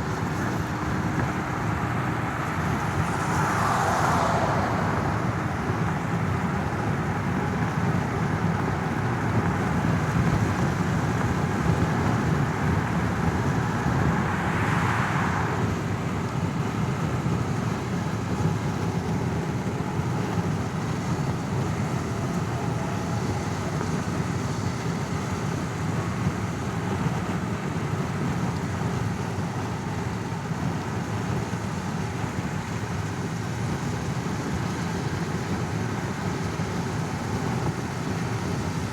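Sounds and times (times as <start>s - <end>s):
engine and road noise rumble: 0.0s - 38.9s.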